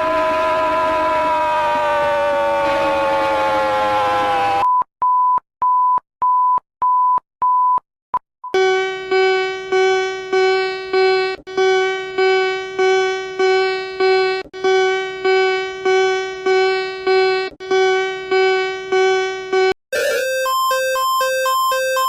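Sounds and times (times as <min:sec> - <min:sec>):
alternating high and low alarm: 0:08.6 - 0:22.0
buzzy alarm tone pulses: 0:08.6 - 0:22.0.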